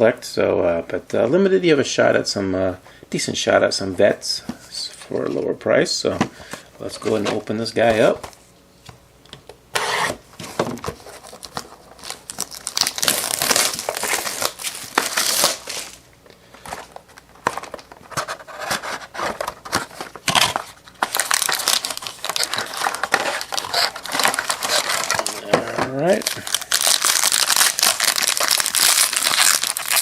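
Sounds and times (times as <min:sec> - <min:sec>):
plastic wrapping crinkling: 0:11.0 - 0:16.0, 0:16.6 - 0:30.0.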